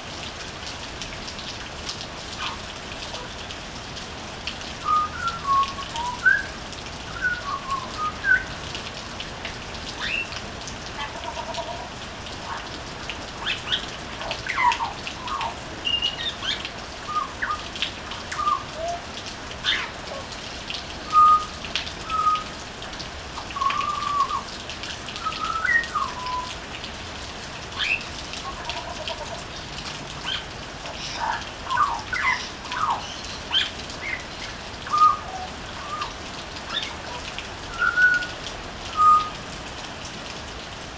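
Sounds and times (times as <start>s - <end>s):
rain pattering with drips: 0.0s - 40.9s
bird singing fluty whistles: 4.8s - 6.5s, 7.1s - 8.5s, 14.6s - 17.6s, 18.4s - 19.0s, 21.1s - 21.5s, 22.1s - 22.5s, 23.6s - 24.5s, 25.2s - 26.5s, 34.9s - 36.1s, 37.7s - 38.4s, 39.0s - 39.4s.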